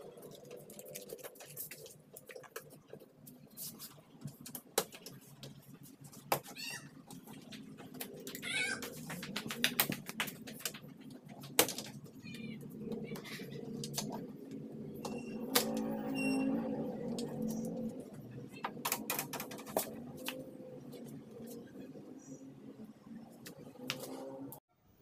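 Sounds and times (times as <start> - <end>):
cat meowing: 8.4 - 8.8.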